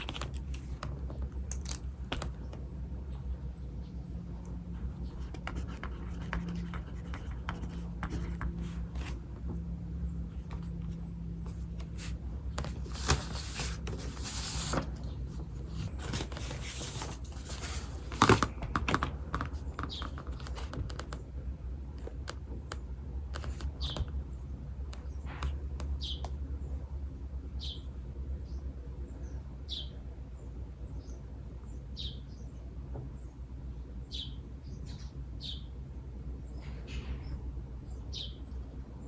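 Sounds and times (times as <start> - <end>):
paper rustling: 0.0 - 2.4, 10.3 - 21.2
pen scratching on paper: 4.7 - 9.5, 10.3 - 14.9
bird chirping: 36.5 - 38.6.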